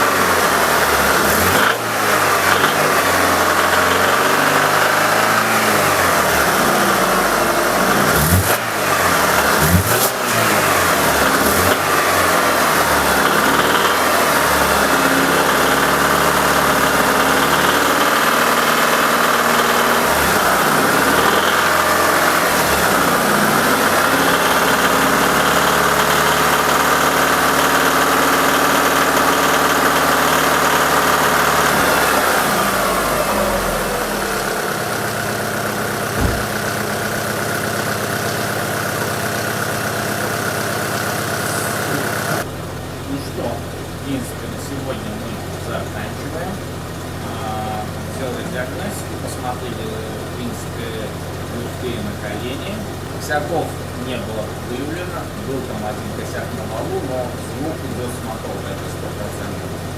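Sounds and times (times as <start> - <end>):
engine knock: 0.0 - 33.0, 34.4 - 42.5
car engine running: 0.0 - 59.9.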